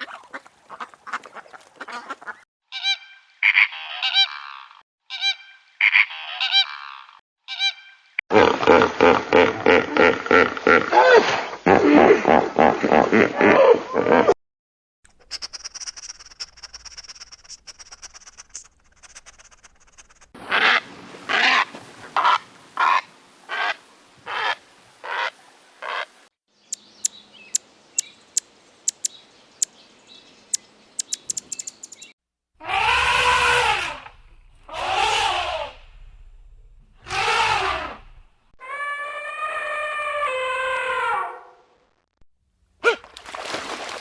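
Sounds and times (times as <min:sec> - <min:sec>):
quick high chirps: 0:15.1 - 0:20.4, 0:26.7 - 0:29.7, 0:30.5 - 0:32.1
short repeated animal calls: 0:15.1 - 0:20.4, 0:28.9 - 0:29.1, 0:31.0 - 0:34.1
long drawn-out animal calls: 0:15.1 - 0:21.6, 0:32.6 - 0:35.9, 0:37.0 - 0:38.0, 0:38.6 - 0:41.7.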